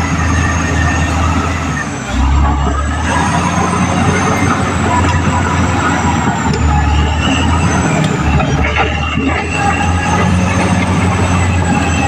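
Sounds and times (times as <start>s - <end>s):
diesel engine drone: 0.0s - 12.0s.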